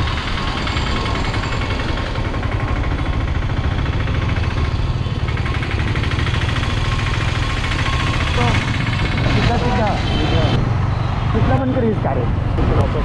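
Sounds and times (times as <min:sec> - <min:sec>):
vehicle engine and road rumble: 0:00.0 - 0:13.0.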